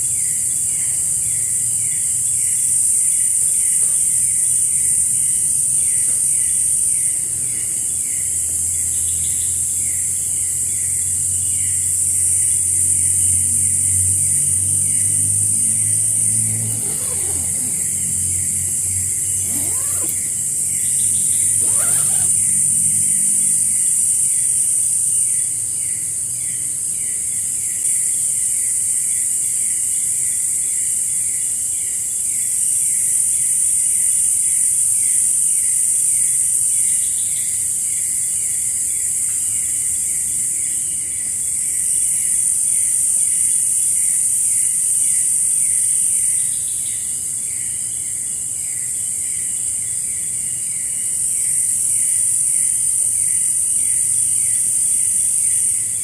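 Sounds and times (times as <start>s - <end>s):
insects high-pitched shrill: 11.5s - 25.5s.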